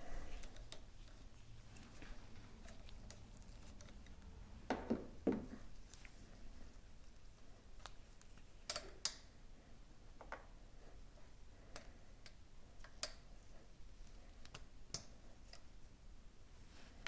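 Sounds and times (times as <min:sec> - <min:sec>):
clicks and metallic taps of tools: 0:07.8 - 0:09.2.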